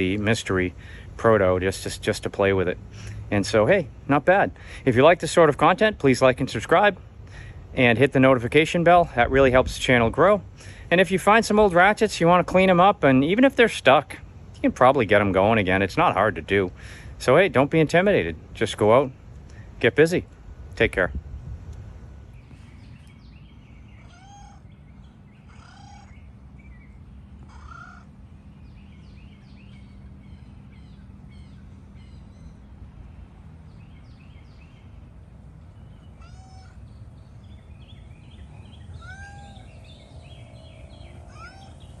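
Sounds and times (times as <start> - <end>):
birds chirping: 0.0 - 21.1, 21.7 - 42.0
steady low rumble: 36.8 - 42.0.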